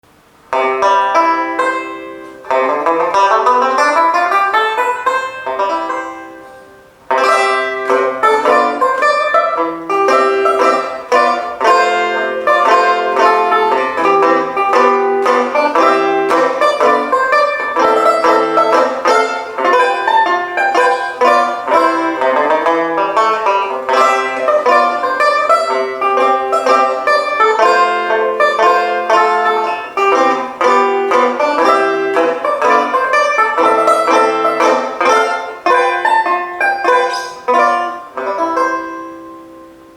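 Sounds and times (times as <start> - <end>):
banjo strummed chords: 0.0 - 39.9.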